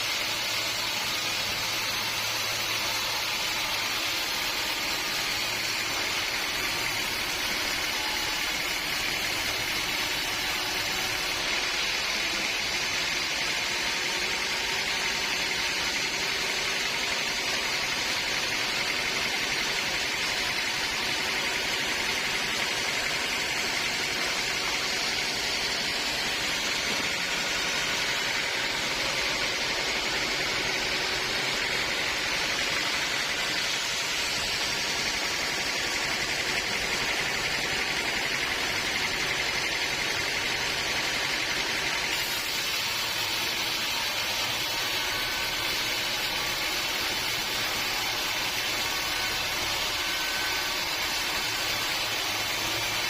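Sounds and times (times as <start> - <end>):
sawmill machinery hiss: 41.8 - 53.0.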